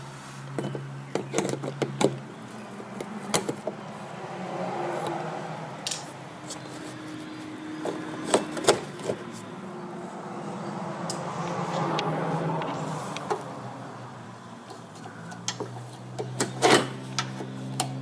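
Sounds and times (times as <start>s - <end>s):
hand tools clicking and knocking: 2.9s - 3.8s, 7.8s - 9.2s, 14.6s - 18.0s.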